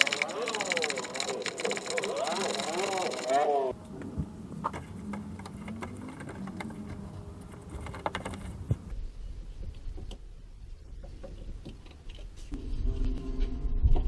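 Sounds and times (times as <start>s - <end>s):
hand tools clicking on metal: 0.0s - 3.4s.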